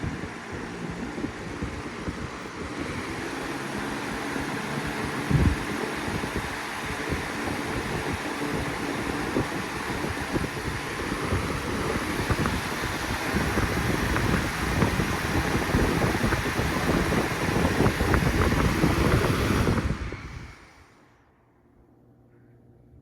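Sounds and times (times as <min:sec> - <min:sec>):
wind noise on microphone: 0:00.0 - 0:21.0
box fan running: 0:00.0 - 0:23.0.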